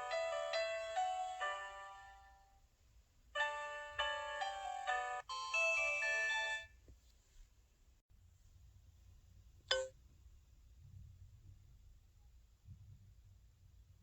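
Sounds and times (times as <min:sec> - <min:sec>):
phone alert chime: 0:03.4 - 0:06.7.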